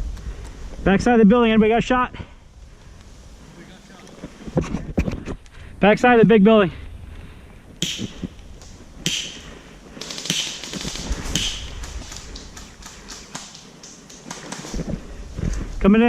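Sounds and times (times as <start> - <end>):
short hissing bursts: 7.8 - 14.8.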